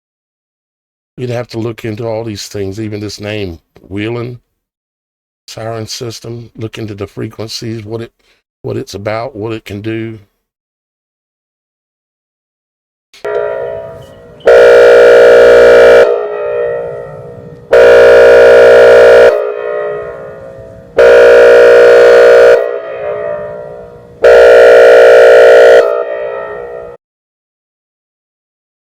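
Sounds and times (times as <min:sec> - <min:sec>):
outdoor warning siren blasts: 0:13.2 - 0:27.0.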